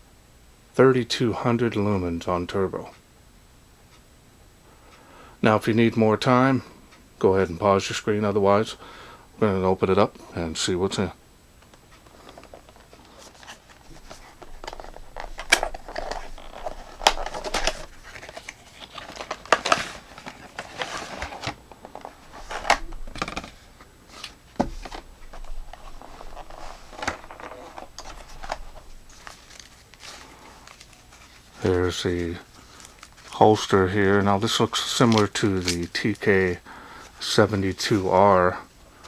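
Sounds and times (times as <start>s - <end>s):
cardboard packaging rustling: 11.9s - 38.4s.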